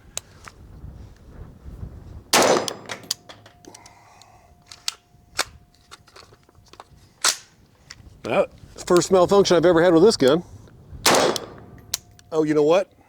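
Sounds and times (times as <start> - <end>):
rifle shots: 2.3 - 3.5, 11.0 - 12.1.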